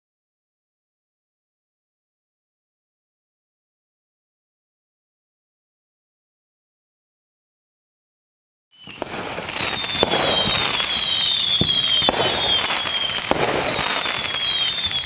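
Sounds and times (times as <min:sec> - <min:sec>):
falling whistles: 0:08.7 - 0:15.0
fireworks bangs: 0:08.8 - 0:15.0
fireworks crackling: 0:08.8 - 0:15.0.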